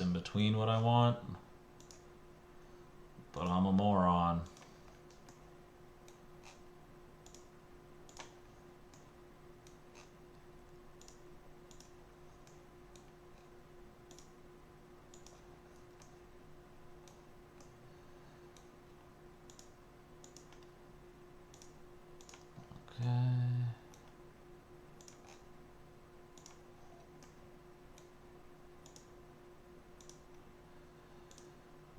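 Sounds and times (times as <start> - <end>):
low electrical hum: 0.0 - 31.9
computer mouse clicks: 1.8 - 2.1, 4.5 - 10.2, 11.0 - 14.4, 15.1 - 16.2, 17.0 - 17.8, 18.5 - 18.8, 19.4 - 20.8, 21.5 - 22.7, 25.0 - 25.5, 26.3 - 28.2, 28.8 - 29.2, 30.0 - 30.4, 31.2 - 31.6.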